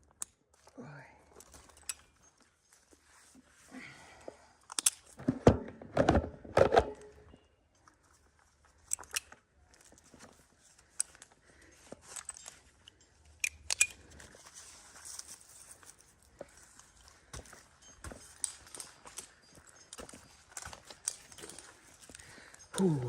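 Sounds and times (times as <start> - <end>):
sharp clicks and metallic clinks: 1.4 - 2.5, 10.6 - 14.4, 16.8 - 23.0.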